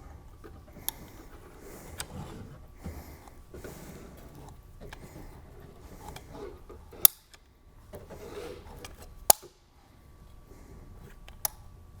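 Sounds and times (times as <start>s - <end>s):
faint handling rustle: 0.0s - 7.1s.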